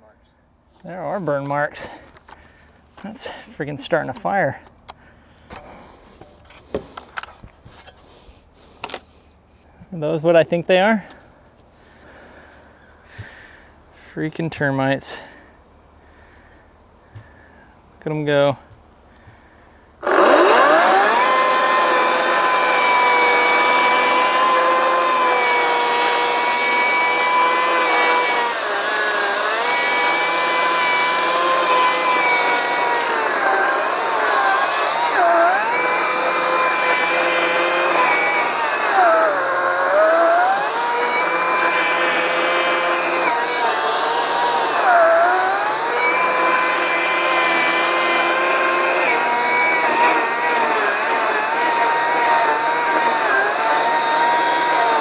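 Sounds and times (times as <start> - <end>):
chainsaw cutting wood: 20.0 - 55.0.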